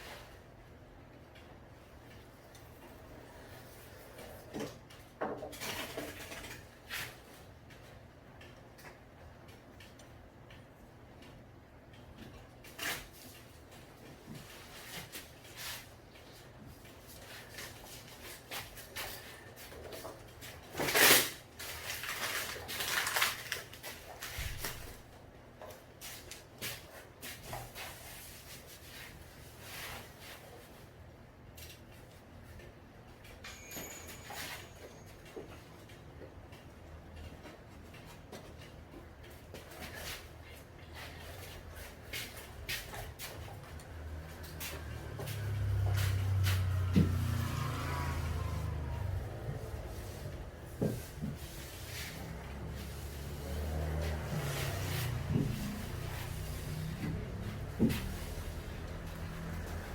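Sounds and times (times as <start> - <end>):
rustling scrapes: 26.0 - 30.9, 39.7 - 59.9.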